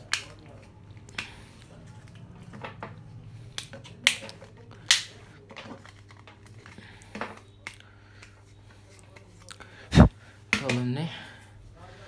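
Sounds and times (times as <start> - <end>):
plastic phone case clicks: 3.6 - 6.5.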